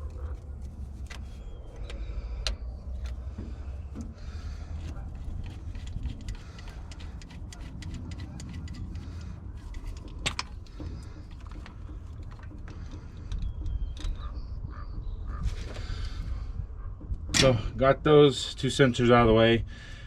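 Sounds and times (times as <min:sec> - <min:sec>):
steady low rumble: 0:00.0 - 0:20.0
wrench clicking on metal fittings: 0:05.3 - 0:10.5.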